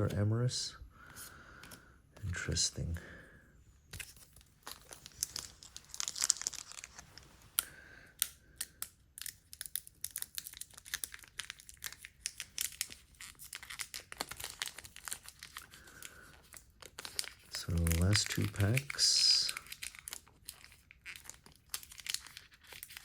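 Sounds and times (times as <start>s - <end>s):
foil wrappers crinkling: 4.0s - 7.7s, 8.6s - 23.0s.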